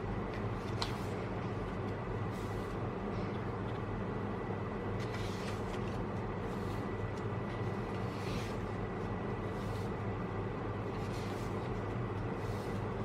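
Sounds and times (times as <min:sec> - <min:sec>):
book pages being turned: 0:00.3 - 0:02.8, 0:04.9 - 0:10.1, 0:10.8 - 0:13.0.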